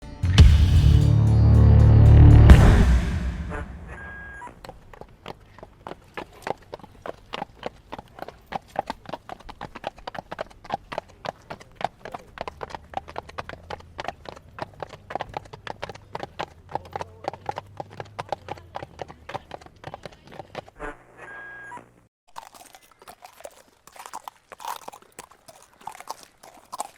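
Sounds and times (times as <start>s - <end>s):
horse hoofbeats trotting: 4.1s - 20.9s, 22.3s - 26.9s.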